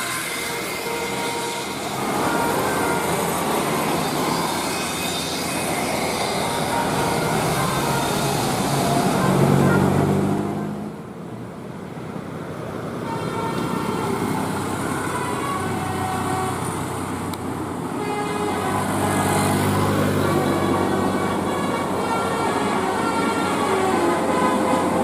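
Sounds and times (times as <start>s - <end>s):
multi-tone bus horn tune: 0.0s - 11.0s, 13.0s - 25.0s
vehicle noise: 0.0s - 25.0s.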